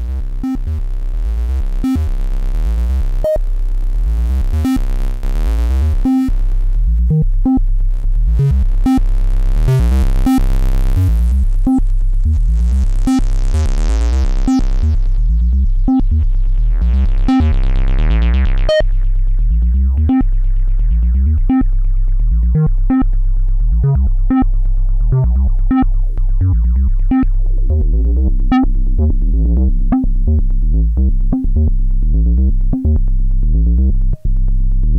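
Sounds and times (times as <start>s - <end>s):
synth bass: 0.0s - 34.9s
synthesizer plucky notes: 19.4s - 34.3s.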